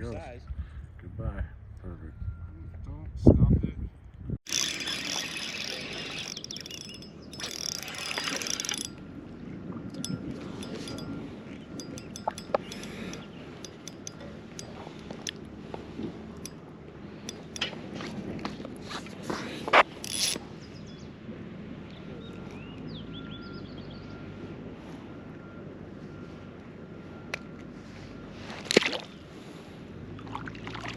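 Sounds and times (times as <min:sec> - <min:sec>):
fishing reel ratcheting: 0:04.5 - 0:09.0, 0:09.9 - 0:11.2, 0:11.8 - 0:14.8, 0:17.2 - 0:17.7, 0:19.9 - 0:20.4.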